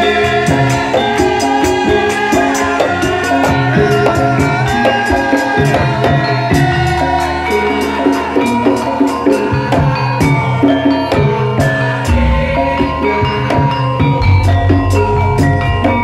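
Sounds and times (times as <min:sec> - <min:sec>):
melodic metal percussion: 0:00.0 - 0:16.0
bass line: 0:12.1 - 0:16.0
fast even ticking beat: 0:14.2 - 0:16.0.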